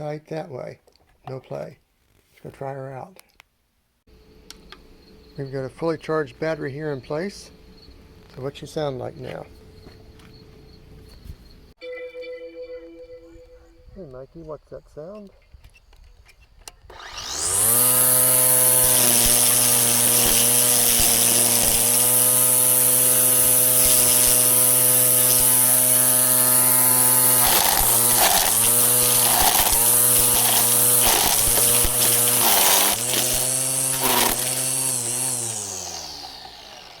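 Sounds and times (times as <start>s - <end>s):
string trimmer motor whine: 16.8s - 37.0s.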